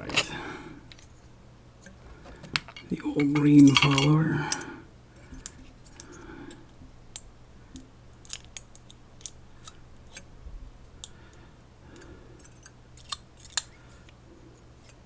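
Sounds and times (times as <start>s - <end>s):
small clicks of lock parts: 8.2s - 10.3s, 12.0s - 14.2s.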